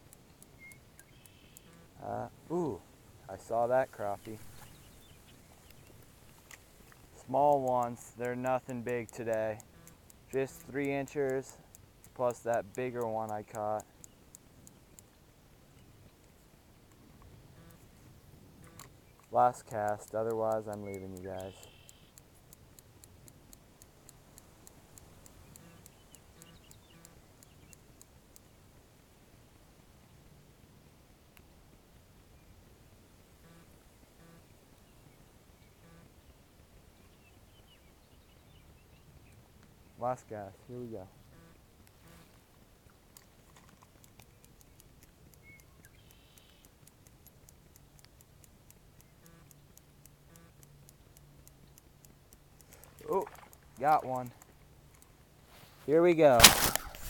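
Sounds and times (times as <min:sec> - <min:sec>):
faint high ticking: 0:00.0 - 0:28.5, 0:38.7 - 0:56.2
faint chirps: 0:00.3 - 0:02.8, 0:03.4 - 0:07.3, 0:20.7 - 0:22.2, 0:24.7 - 0:27.8, 0:44.3 - 0:46.8
faint high chirps: 0:00.4 - 0:01.9, 0:20.8 - 0:22.2, 0:45.4 - 0:46.7.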